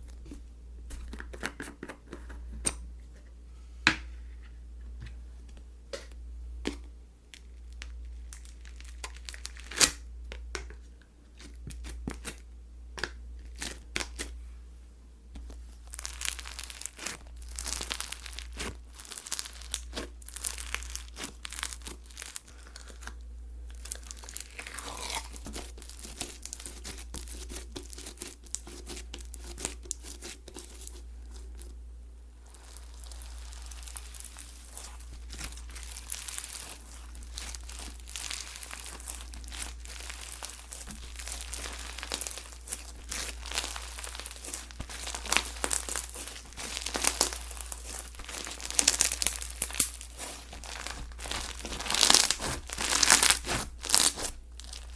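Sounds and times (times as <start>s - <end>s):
slime crackling and popping: 7.3s - 10.4s, 15.4s - 31.7s, 32.3s - 54.9s
steady low hum: 20.1s - 54.6s.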